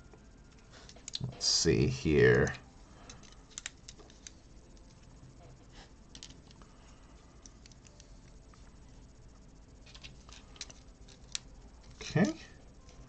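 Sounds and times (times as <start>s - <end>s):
plastic bricks clicking together: 3.2s - 4.4s, 6.1s - 6.6s.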